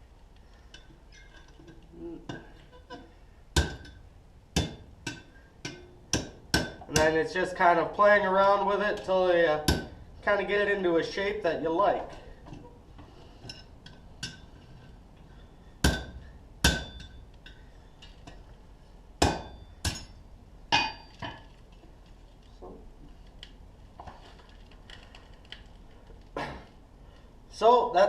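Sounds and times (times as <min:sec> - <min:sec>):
hammer striking metal on anvil: 0:04.6 - 0:07.0, 0:15.8 - 0:17.6, 0:19.2 - 0:21.4
metallic ring: 0:20.8 - 0:21.4.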